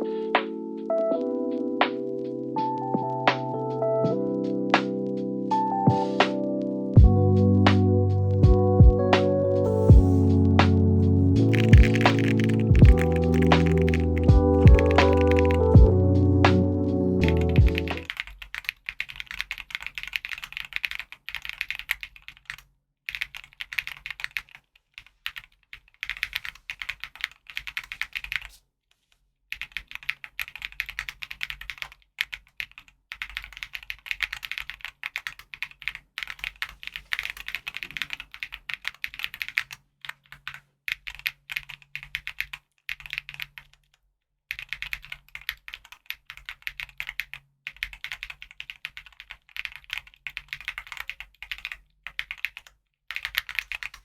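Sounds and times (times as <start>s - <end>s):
mechanical keyboard typing: 11.4s - 28.5s, 29.5s - 54.0s.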